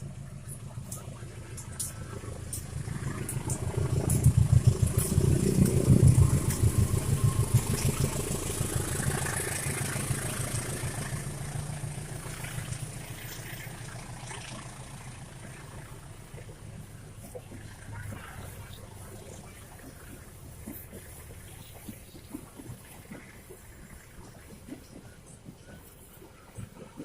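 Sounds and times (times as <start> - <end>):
train wheels clattering: 0.0 - 11.5
diesel train engine hum: 0.0 - 27.0.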